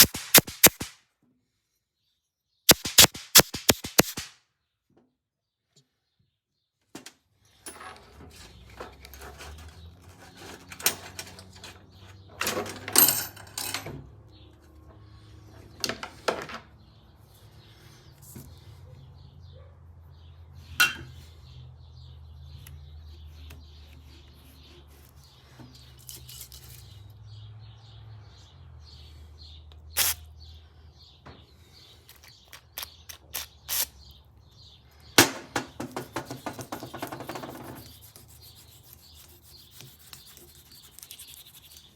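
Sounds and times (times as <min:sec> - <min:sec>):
small parts clicking and rattling: 0:02.7 - 0:04.3, 0:25.8 - 0:27.0
faint bird chirping: 0:16.8 - 0:35.2, 0:35.9 - 0:41.9.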